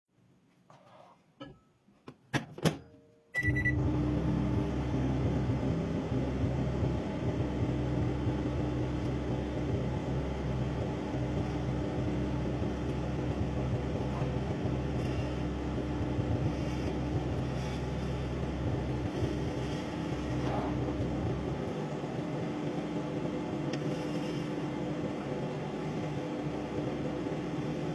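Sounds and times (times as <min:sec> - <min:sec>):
microwave oven humming: 0:03.2 - 0:27.9
short high beep: 0:03.4 - 0:03.8.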